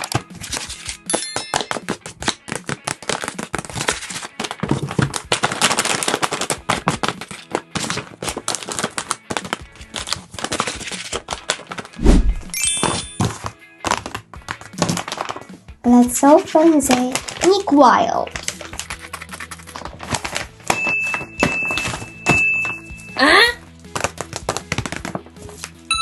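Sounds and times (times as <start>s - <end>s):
paper crinkling: 0.0s - 12.5s, 13.2s - 22.8s, 23.8s - 25.8s
low thump: 12.0s - 12.5s.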